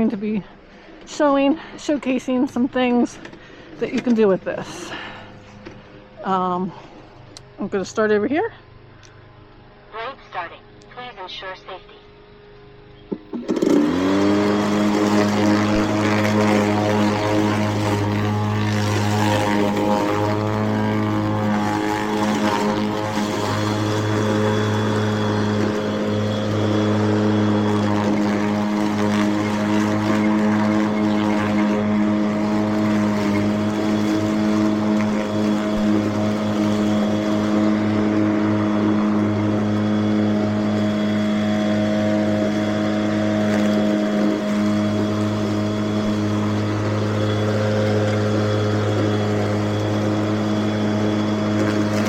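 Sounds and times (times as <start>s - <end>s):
electric mower motor humming: 13.1s - 52.0s.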